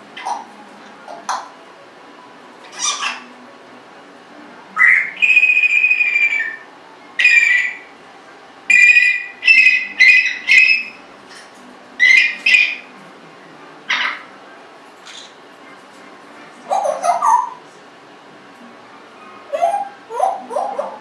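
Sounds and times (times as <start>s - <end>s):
parrot whistling: 0.2s - 0.5s, 2.6s - 3.3s, 4.8s - 7.9s, 8.7s - 11.0s, 12.0s - 12.9s, 16.7s - 17.6s, 19.5s - 21.0s.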